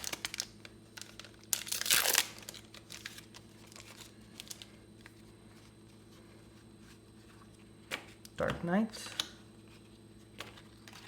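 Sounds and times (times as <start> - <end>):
foil wrapper crinkling and tearing: 0.0 - 4.7.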